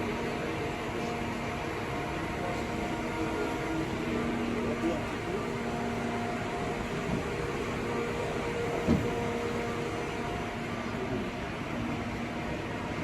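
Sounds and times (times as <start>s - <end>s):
machine mechanical hum: 0.0s - 13.0s.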